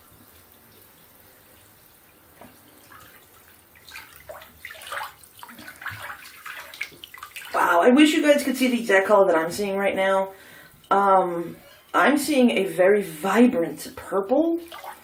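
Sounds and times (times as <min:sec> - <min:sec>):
bathwater sloshing and dripping: 0:00.0 - 0:15.0
small water splashes: 0:00.2 - 0:07.9, 0:14.5 - 0:15.0.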